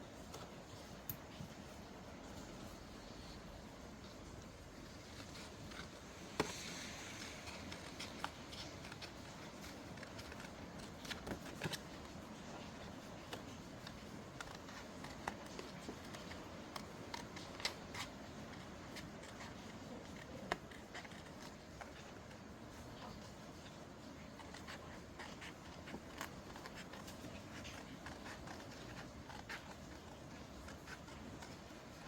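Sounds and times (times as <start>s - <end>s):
faint rain hiss: 0.0s - 16.4s
paper rustling: 0.0s - 32.0s.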